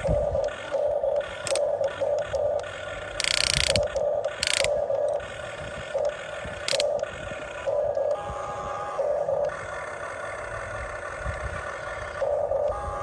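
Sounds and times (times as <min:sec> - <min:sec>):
pulsing whir of electric motors: 0:00.0 - 0:13.0
loud rasping bursts: 0:00.5 - 0:07.6.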